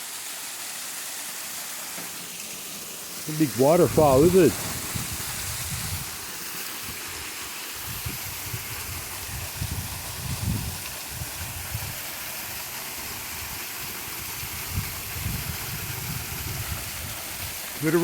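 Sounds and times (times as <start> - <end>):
waterfall rushing: 0.0 - 18.0
low rumbles: 3.7 - 6.1.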